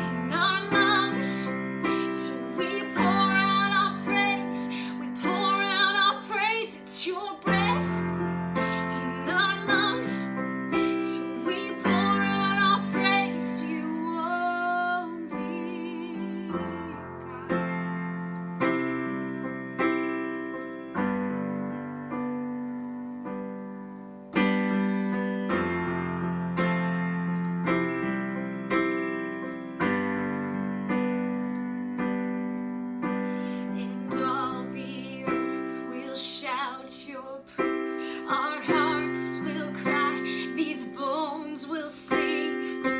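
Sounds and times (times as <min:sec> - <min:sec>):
woman singing: 0:00.0 - 0:17.8, 0:33.5 - 0:42.9.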